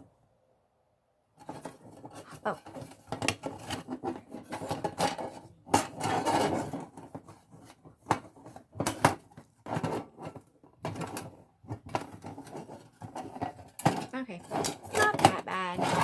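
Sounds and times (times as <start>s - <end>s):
metal panels scraping and rattling: 1.4s - 7.6s, 11.9s - 16.0s.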